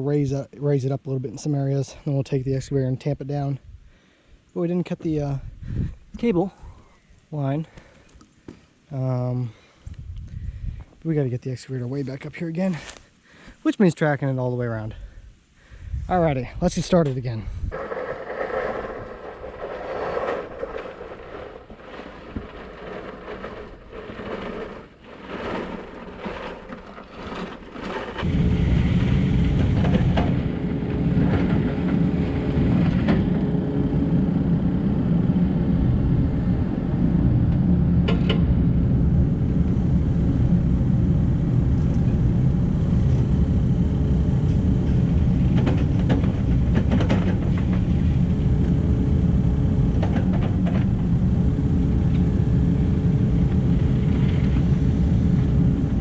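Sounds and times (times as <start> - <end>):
excavator diesel engine rumbling: 15.9 - 56.0.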